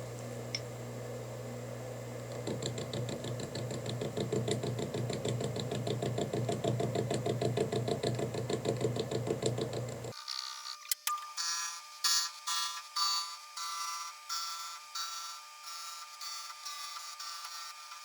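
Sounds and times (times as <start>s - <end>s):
lathe motor humming: 0.0s - 10.1s
lathe tool rhythmic knocking: 2.3s - 10.1s.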